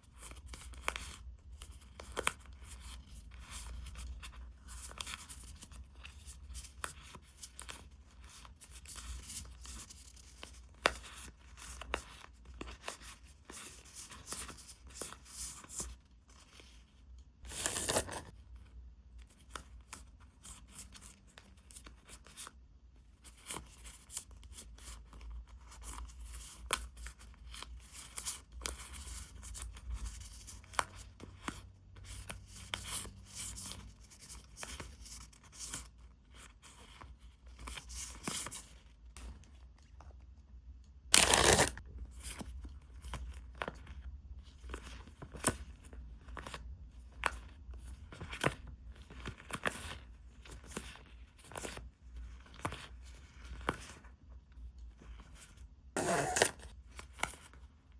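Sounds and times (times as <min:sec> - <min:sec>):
packaging tearing: 0:41.1 - 0:41.8, 0:56.0 - 0:56.7.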